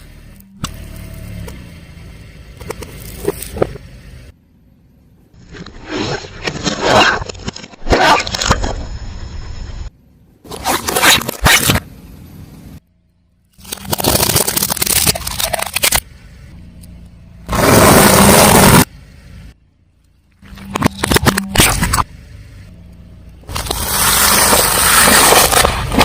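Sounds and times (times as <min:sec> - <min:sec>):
faint low engine hum: 0:00.0 - 0:05.6, 0:09.0 - 0:10.5, 0:11.8 - 0:13.7, 0:15.2 - 0:23.9
tyre crushing objects: 0:23.5 - 0:26.0.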